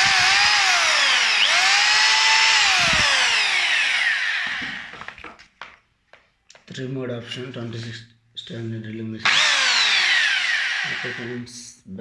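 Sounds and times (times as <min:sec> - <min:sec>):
hammer drill motor whining: 0:00.0 - 0:05.1, 0:09.3 - 0:11.4.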